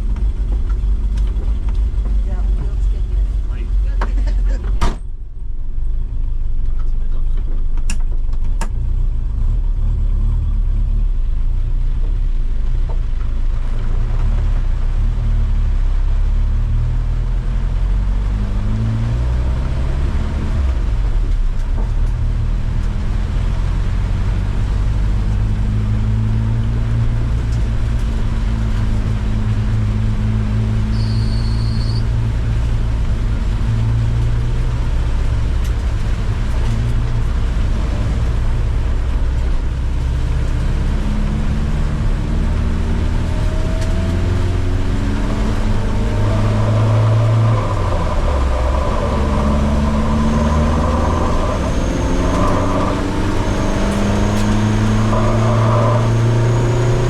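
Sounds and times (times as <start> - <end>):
car engine running: 0.0 - 57.0
short high-pitched beep: 30.9 - 32.1.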